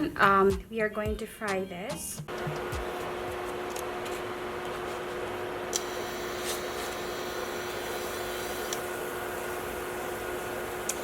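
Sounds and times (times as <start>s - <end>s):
fan humming: 2.2s - 11.0s.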